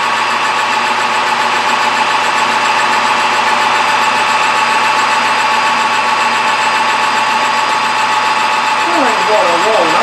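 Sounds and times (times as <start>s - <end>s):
metal lathe whining: 0.0s - 10.0s.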